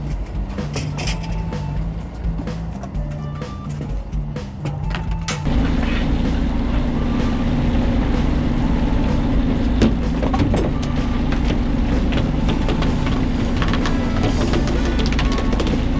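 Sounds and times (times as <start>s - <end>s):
boat engine humming: 0.0s - 15.9s.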